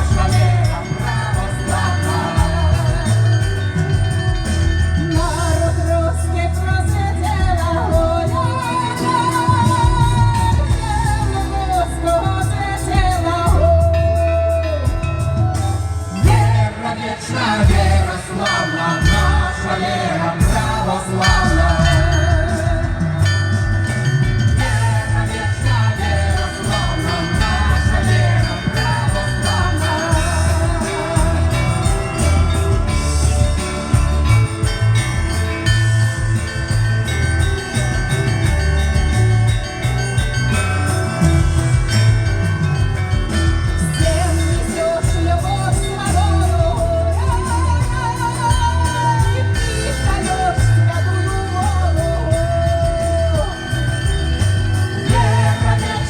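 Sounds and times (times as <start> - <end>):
heavy low bell: 0.0 - 56.0
church bells pealing: 15.8 - 56.0.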